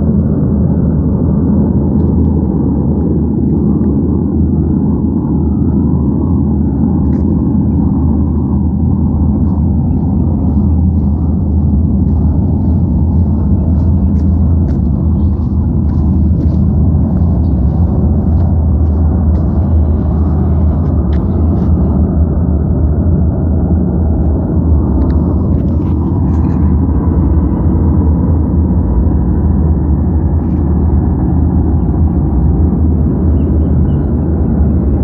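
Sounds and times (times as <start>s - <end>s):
low rumbling drone: 0.0s - 35.0s.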